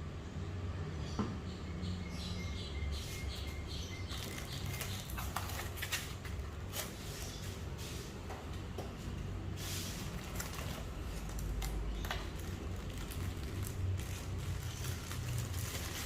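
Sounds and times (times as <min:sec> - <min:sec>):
packaging rustling: 0:04.1 - 0:07.4, 0:10.0 - 0:16.0.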